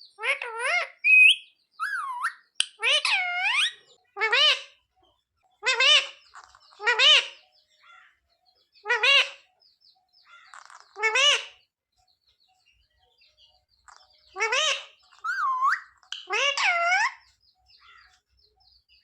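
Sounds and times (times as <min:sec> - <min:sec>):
parrot calling: 0:00.2 - 0:04.8, 0:05.6 - 0:08.2, 0:08.8 - 0:09.5, 0:10.2 - 0:11.7, 0:13.9 - 0:18.2.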